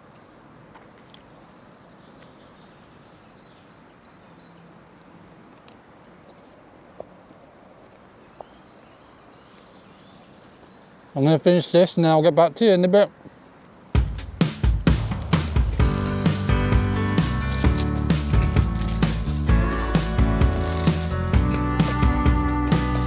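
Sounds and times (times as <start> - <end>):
faint birds chirping: 0.0 - 23.0
thin high call: 15.9 - 23.0.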